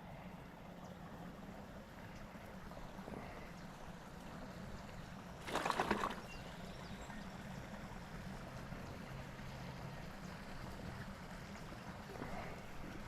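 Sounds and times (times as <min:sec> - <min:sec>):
faint water noise: 0:00.0 - 0:13.0
rough splashing rustle: 0:05.4 - 0:06.3.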